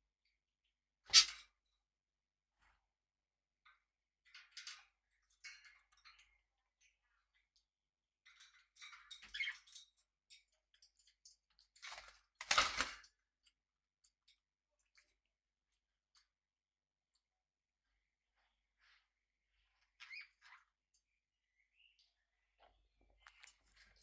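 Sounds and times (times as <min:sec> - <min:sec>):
birds clicking and scratching: 0:01.1 - 0:01.4, 0:11.8 - 0:13.1.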